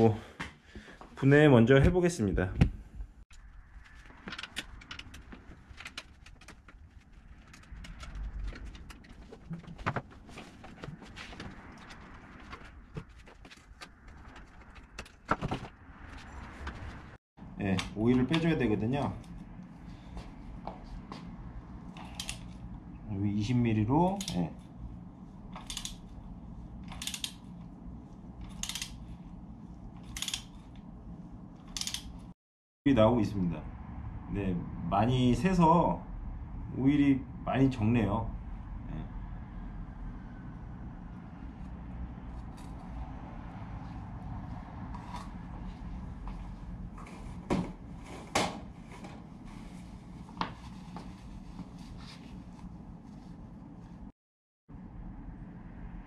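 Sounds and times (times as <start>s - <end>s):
steady low hum: 2.7s - 32.4s.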